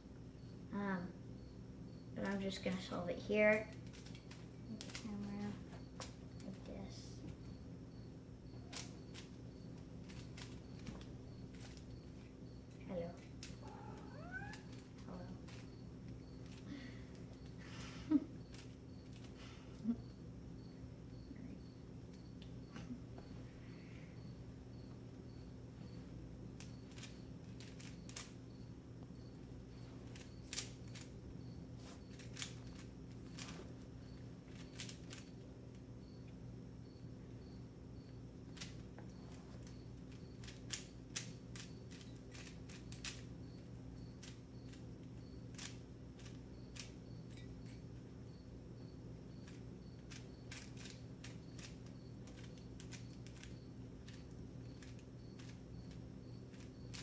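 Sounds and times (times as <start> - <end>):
steady low hum: 0.0 - 57.0
puzzle cube layers clicking: 3.8 - 6.6, 8.6 - 12.2, 26.6 - 28.4, 30.0 - 31.2, 31.9 - 35.4, 39.6 - 43.3, 49.4 - 57.0.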